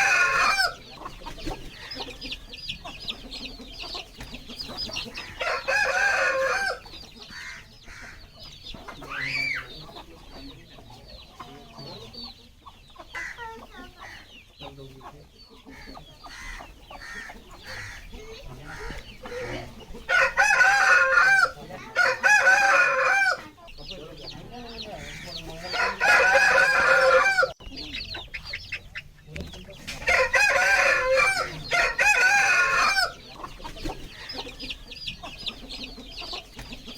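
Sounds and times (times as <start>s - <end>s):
rooster crowing: 0.0s - 0.8s, 5.2s - 8.1s, 18.8s - 23.5s, 25.6s - 27.6s, 30.0s - 33.2s
chickens clucking and calling: 0.0s - 36.9s.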